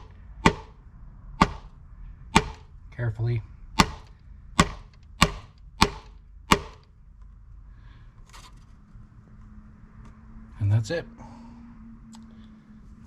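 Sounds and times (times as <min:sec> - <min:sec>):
hammer tapping metal: 0:00.0 - 0:00.8, 0:01.4 - 0:01.7, 0:02.4 - 0:02.7, 0:03.8 - 0:06.9.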